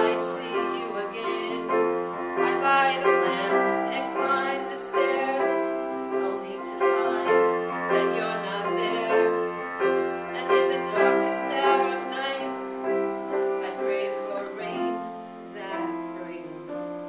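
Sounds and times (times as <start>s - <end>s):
slow piano melody with chords: 0.0s - 17.0s.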